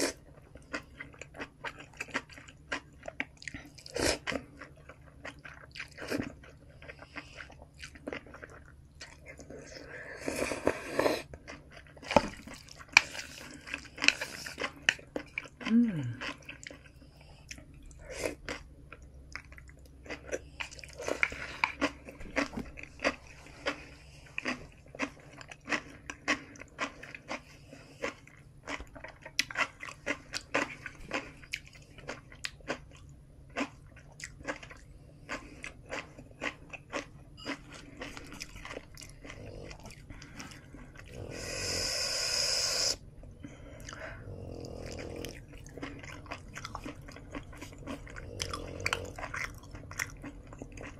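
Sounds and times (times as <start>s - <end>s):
chewing and wet mouth smacks: 10.5s - 41.2s, 43.8s - 50.9s.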